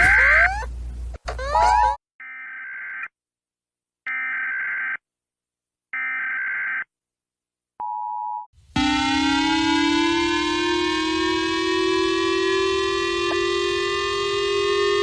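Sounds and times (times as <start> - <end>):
siren rising in pitch: 8.7 - 15.0.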